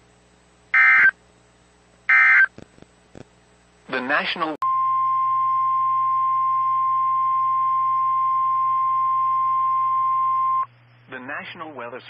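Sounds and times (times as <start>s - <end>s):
steady alarm tone: 0.8s - 1.2s, 2.1s - 2.5s.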